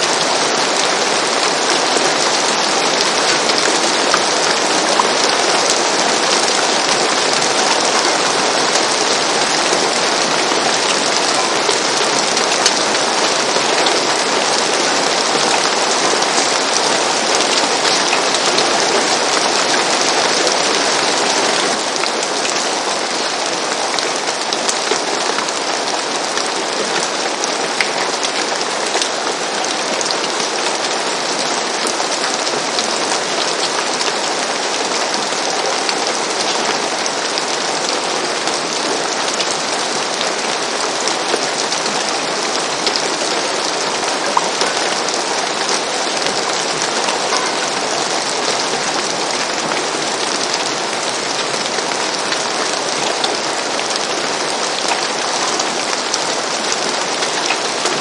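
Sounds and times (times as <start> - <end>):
rain falling on a roof: 0.0 - 58.0
raindrops ticking: 33.6 - 58.0.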